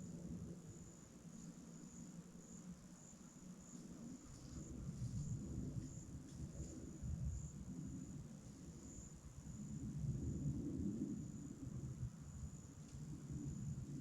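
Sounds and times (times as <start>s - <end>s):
insect chirping: 0.2s - 4.2s, 7.3s - 10.4s.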